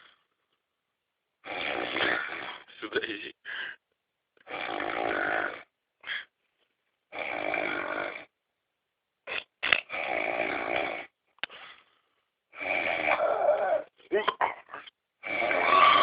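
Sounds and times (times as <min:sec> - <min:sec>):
person snoring: 0:01.4 - 0:02.7, 0:04.4 - 0:06.3, 0:07.1 - 0:08.3, 0:09.3 - 0:11.6, 0:12.5 - 0:13.9, 0:15.2 - 0:16.0.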